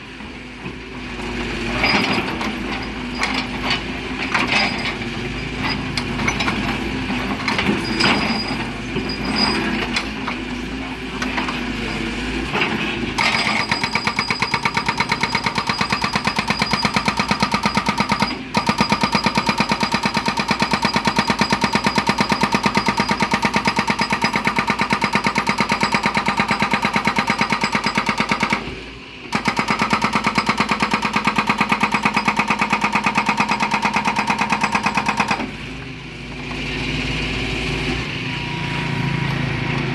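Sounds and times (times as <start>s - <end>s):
hydraulic breaker hammering stone: 12.5s - 35.7s
excavator engine knocking: 13.2s - 28.6s.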